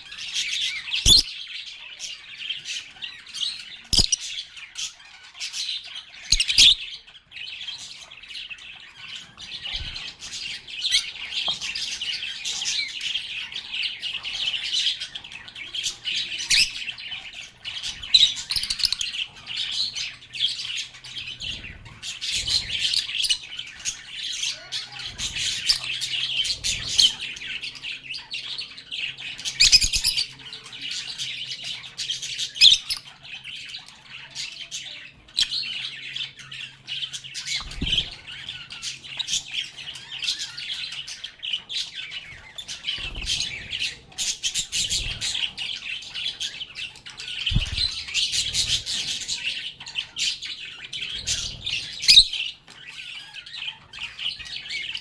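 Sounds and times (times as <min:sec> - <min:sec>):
bird squawks: 0:00.0 - 0:01.4, 0:02.8 - 0:07.1, 0:37.3 - 0:55.0
lovebirds chattering: 0:00.0 - 0:55.0.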